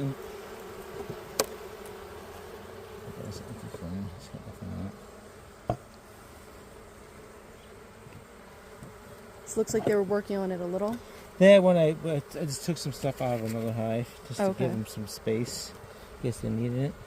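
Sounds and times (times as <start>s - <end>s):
bees buzzing in a hive: 0.0s - 17.0s.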